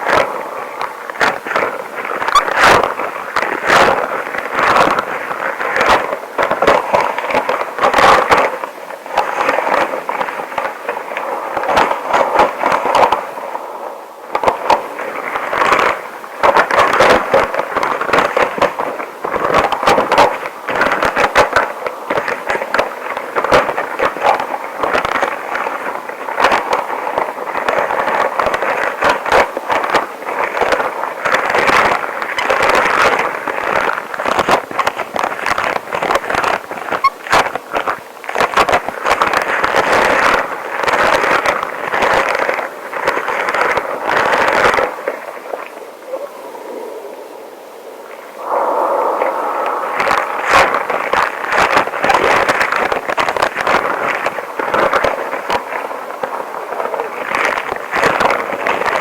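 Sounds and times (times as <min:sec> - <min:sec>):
rubber gloves crinkling and clicking: 0:14.3 - 0:45.8, 0:49.6 - 0:59.0.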